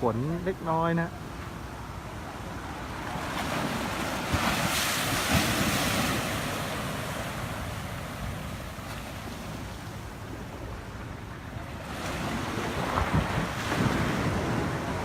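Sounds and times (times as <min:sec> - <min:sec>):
waves breaking: 0:00.1 - 0:15.0
wind buffeting microphone: 0:09.3 - 0:15.0.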